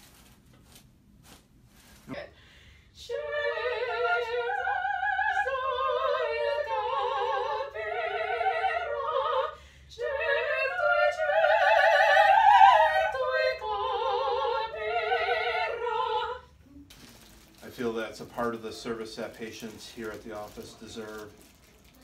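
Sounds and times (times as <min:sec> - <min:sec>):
operatic duet singing: 0:03.0 - 0:16.4.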